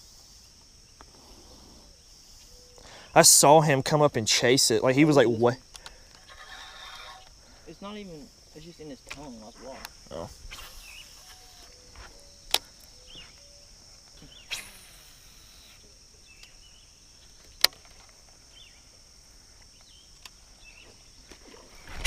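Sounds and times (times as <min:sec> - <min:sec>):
crickets and insects chirping: 0:00.0 - 0:22.0
sharp clicks: 0:05.7 - 0:06.3, 0:12.4 - 0:12.9.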